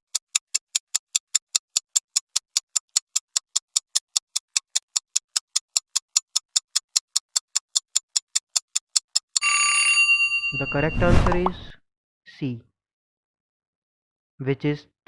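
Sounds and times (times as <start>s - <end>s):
fast clock ticking: 0.0s - 9.4s.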